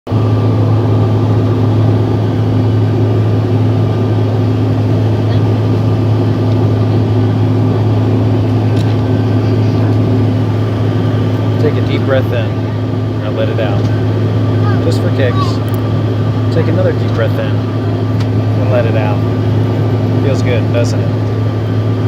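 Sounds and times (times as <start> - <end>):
airplane cabin drone: 0.1 - 22.0.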